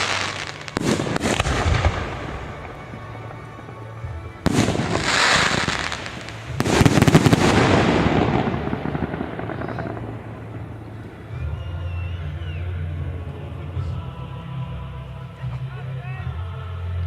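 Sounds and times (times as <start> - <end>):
fireworks shells bursting: 0.0 - 11.6
fireworks crackling: 0.0 - 14.0.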